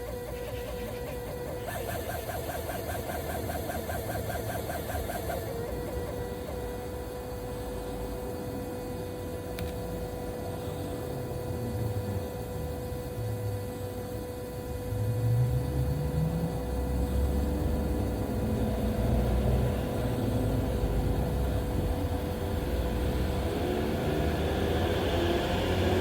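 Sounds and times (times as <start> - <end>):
thin steady whine: 0.0 - 26.0
engine and road rumble: 14.5 - 26.0.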